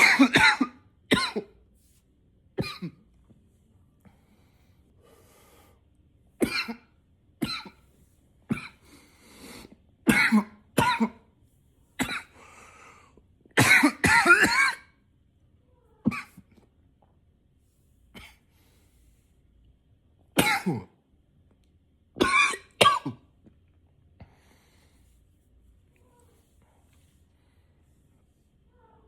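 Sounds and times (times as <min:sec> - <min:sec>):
man coughing: 0:00.0 - 0:01.5, 0:06.4 - 0:07.8, 0:13.6 - 0:14.9, 0:20.4 - 0:21.0.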